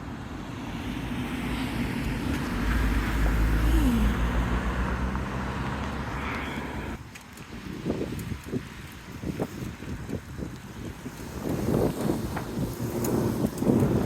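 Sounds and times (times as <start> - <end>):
car driving past: 0.7 - 7.0.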